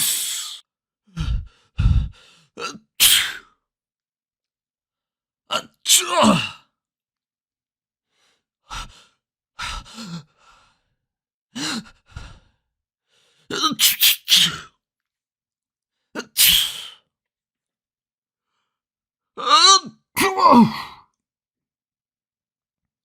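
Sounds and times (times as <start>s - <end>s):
people sneezing: 13.7s - 14.6s, 16.3s - 16.9s.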